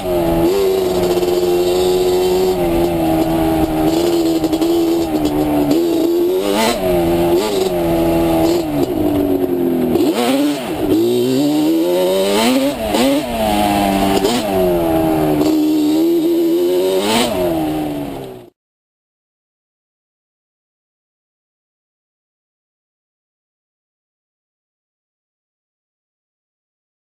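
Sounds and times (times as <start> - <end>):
two-stroke engine revving: 0.0 - 18.5.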